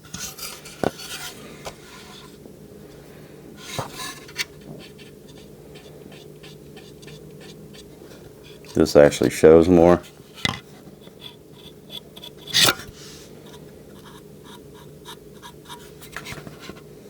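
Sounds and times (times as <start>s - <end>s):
steady low hum: 0.0s - 17.0s
hands handling plastic parts: 8.5s - 10.8s.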